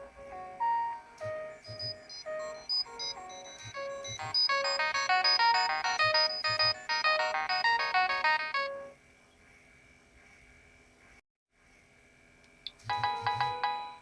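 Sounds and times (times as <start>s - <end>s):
polyphonic phone ringtone: 1.3s - 9.0s, 12.9s - 14.0s.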